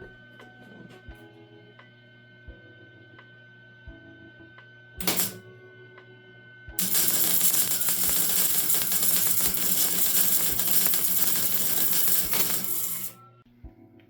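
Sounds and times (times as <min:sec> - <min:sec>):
die grinder grinding metal: 0:05.0 - 0:05.4, 0:06.8 - 0:13.2.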